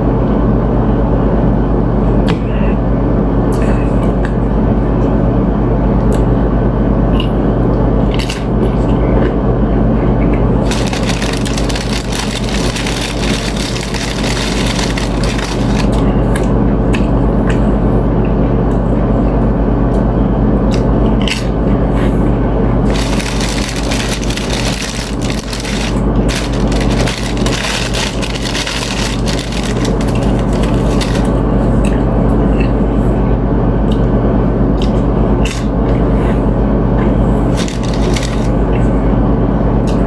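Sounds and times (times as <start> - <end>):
steady low hum: 0.0 - 40.0
chewing and crunching chips: 10.0 - 17.7, 20.6 - 32.8, 37.0 - 38.9.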